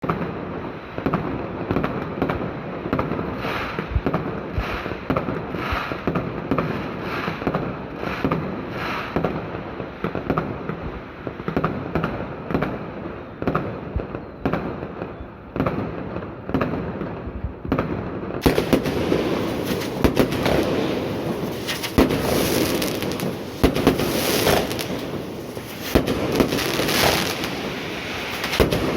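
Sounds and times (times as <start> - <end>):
fireworks bangs: 0.0 - 28.9
fireworks crackle: 0.0 - 28.9.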